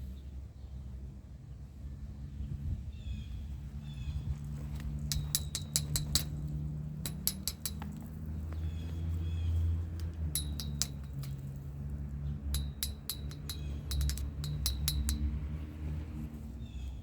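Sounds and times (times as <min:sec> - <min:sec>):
steady low hum: 0:04.2 - 0:17.0
light ringing clinks: 0:04.5 - 0:17.0.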